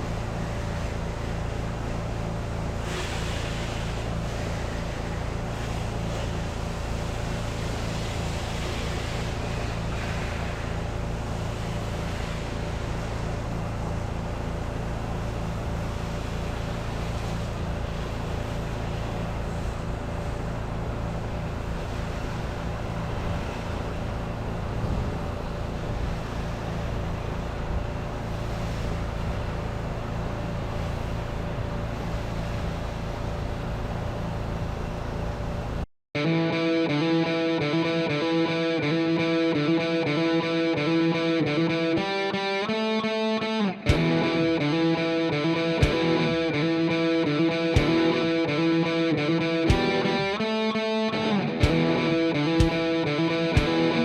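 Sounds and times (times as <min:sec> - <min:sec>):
pressure washer running: 0:00.0 - 0:24.8, 0:36.2 - 0:54.0
water jet hissing: 0:02.8 - 0:13.2.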